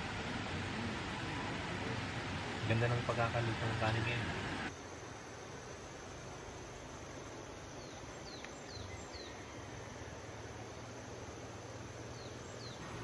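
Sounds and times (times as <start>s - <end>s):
steady outdoor hiss: 0.0s - 13.0s
bird chirping: 7.7s - 10.9s, 11.8s - 13.0s.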